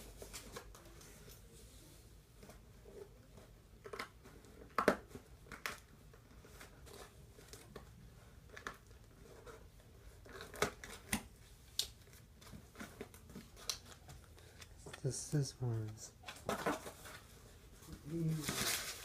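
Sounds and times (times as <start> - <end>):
packaging crinkling and tearing: 18.0 - 19.0.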